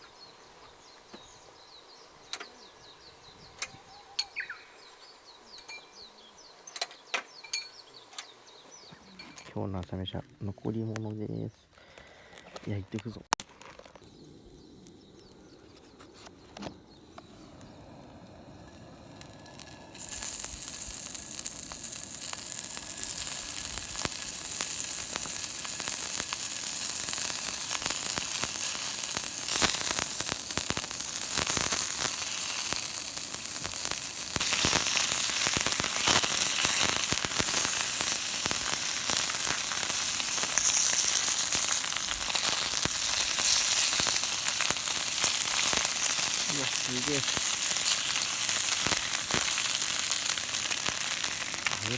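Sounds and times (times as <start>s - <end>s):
fine crackling pops: 12.4s - 51.9s
food sizzling in fat: 13.4s - 51.9s.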